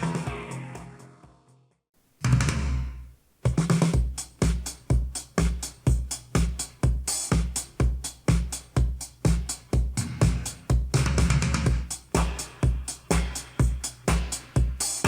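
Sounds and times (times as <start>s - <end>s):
disco dance music: 0.0s - 1.4s, 2.3s - 15.0s
kick drum beat: 3.4s - 15.0s.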